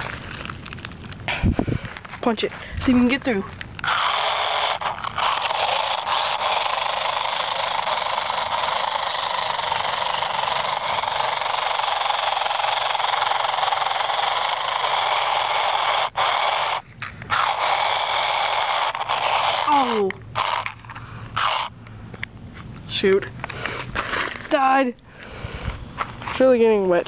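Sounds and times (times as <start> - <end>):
toy car motor whining: 3.0 - 21.8, 23.4 - 25.8.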